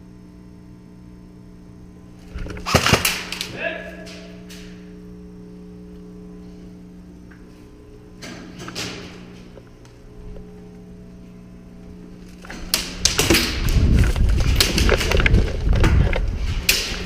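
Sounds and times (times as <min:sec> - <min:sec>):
faint steady hum: 0:00.0 - 0:17.0
thumps and knocks of gear: 0:02.3 - 0:03.3, 0:12.4 - 0:17.0.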